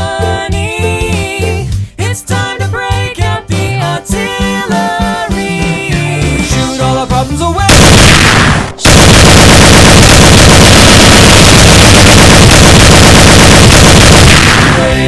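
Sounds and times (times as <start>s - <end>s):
rapid distorted gunfire: 7.7s - 15.0s.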